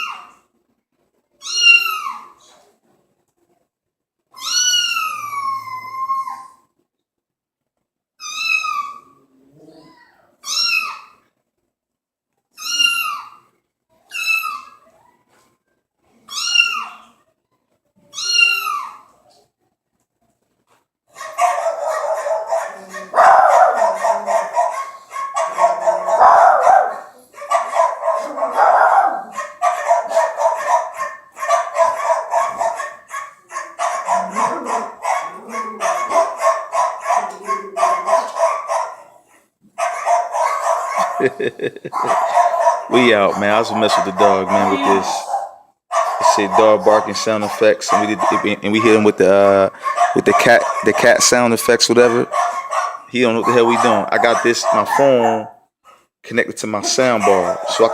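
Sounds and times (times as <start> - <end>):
cat meowing: 1.4 - 2.3, 4.4 - 6.5, 8.2 - 11.2, 12.6 - 13.4, 16.3 - 17.2, 18.1 - 19.1, 44.2 - 45.2
dogs barking rapidly: 21.1 - 57.9.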